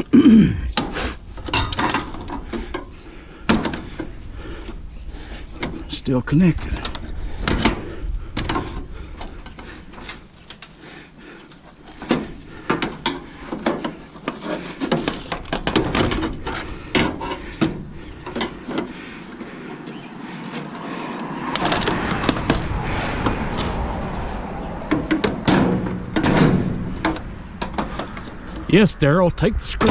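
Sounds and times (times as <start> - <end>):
metal panel clanking: 0.8 - 4.1, 11.8 - 19.1, 21.5 - 28.7
metal scraping: 11.4 - 28.8.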